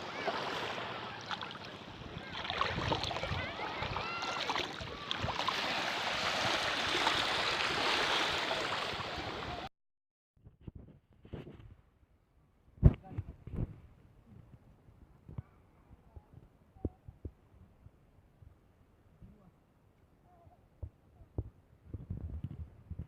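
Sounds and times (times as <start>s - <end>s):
surf washing in: 0.0s - 9.7s.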